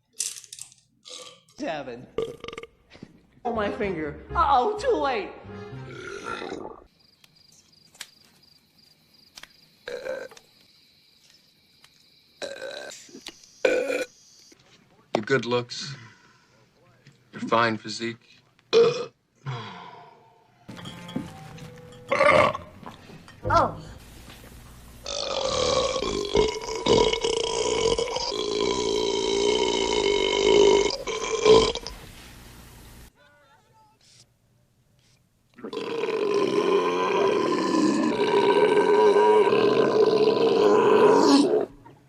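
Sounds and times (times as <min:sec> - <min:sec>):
man burping: 0:02.2 - 0:02.8, 0:06.0 - 0:06.9, 0:12.4 - 0:13.0, 0:18.7 - 0:19.9, 0:22.1 - 0:22.7, 0:25.1 - 0:31.9, 0:35.6 - 0:41.7.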